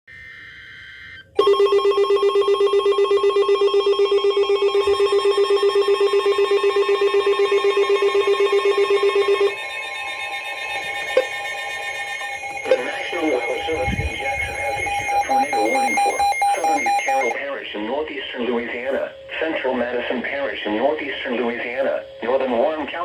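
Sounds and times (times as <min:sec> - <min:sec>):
warbling data tones: 0:05.1 - 0:17.6
loud pulsing alert tone: 0:05.5 - 0:17.4
quieter alert tone: 0:08.0 - 0:17.4.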